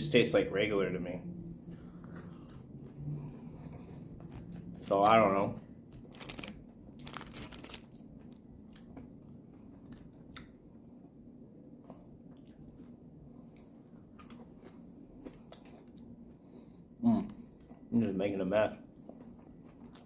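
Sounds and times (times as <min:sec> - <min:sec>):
person chewing food: 0:01.6 - 0:05.2, 0:05.8 - 0:11.0, 0:11.7 - 0:17.9, 0:18.8 - 0:20.0
small clicks and crunches: 0:05.9 - 0:09.1.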